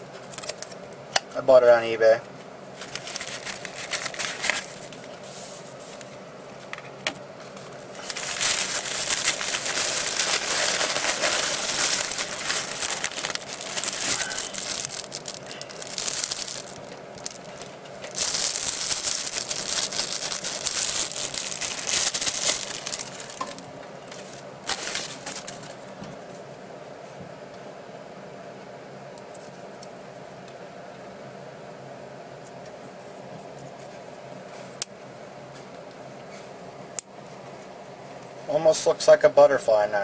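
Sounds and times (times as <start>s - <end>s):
packaging crinkling and tearing: 2.8s - 5.1s, 7.9s - 25.8s.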